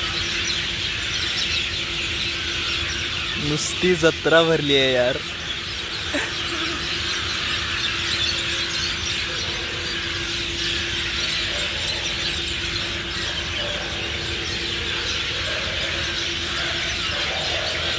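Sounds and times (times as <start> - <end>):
flock of birds chirping: 0.0 - 17.9.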